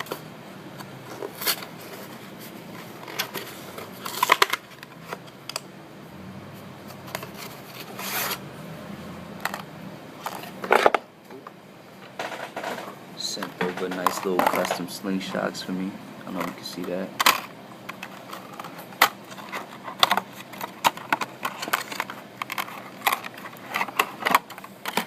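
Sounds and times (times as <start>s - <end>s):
packaging rustling and scraping: 0.8s - 5.4s, 6.9s - 8.4s, 10.2s - 11.0s, 13.6s - 15.0s, 16.3s - 25.0s.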